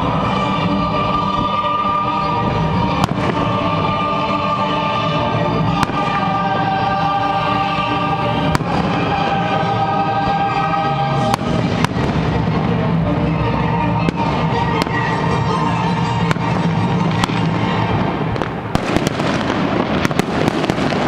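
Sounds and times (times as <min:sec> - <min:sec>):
music with long held notes: 0:00.0 - 0:21.0
fireworks bangs: 0:02.9 - 0:04.2, 0:05.6 - 0:07.1, 0:08.4 - 0:09.7, 0:11.2 - 0:12.7, 0:14.0 - 0:15.4, 0:16.0 - 0:21.0.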